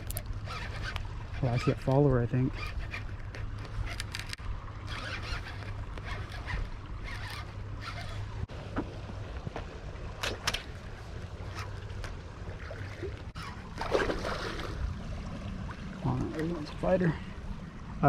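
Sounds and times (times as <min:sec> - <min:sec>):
moving water: 0:00.0 - 0:18.0
short splashes: 0:10.1 - 0:17.4.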